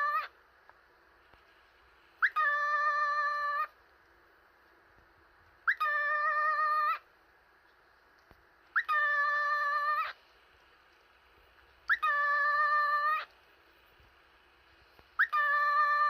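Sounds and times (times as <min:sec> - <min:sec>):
cockatiel calling: 0:00.0 - 0:00.4, 0:02.2 - 0:03.8, 0:05.6 - 0:07.0, 0:08.7 - 0:10.2, 0:11.8 - 0:13.3, 0:15.2 - 0:16.0.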